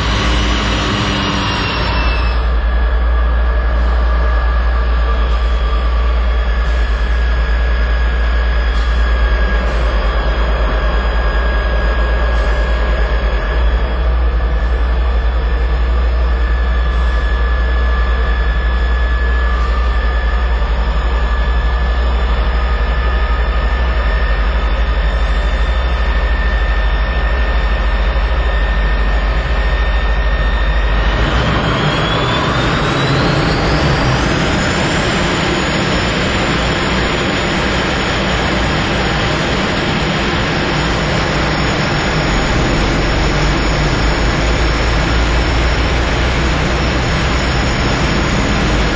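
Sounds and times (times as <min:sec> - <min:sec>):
jet engine spooling up: 0:00.0 - 0:48.9.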